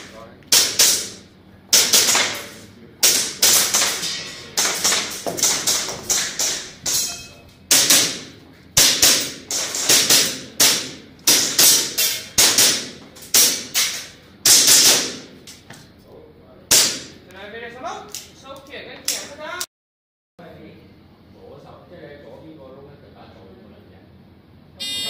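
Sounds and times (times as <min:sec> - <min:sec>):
airsoft gun shots: 0:00.5 - 0:06.9, 0:07.7 - 0:15.3, 0:16.7 - 0:17.2.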